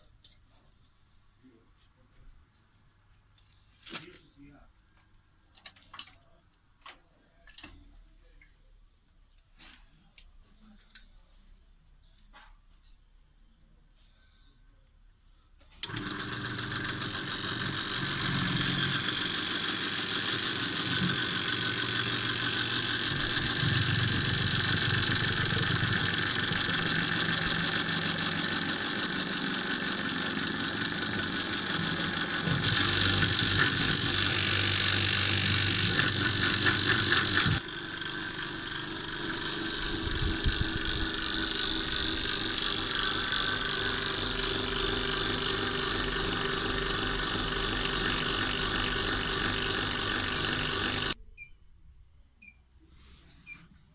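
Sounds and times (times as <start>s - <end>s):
motor-driven machine running: 15.8s - 51.2s
harsh high-pitched machine whine: 16.0s - 51.2s.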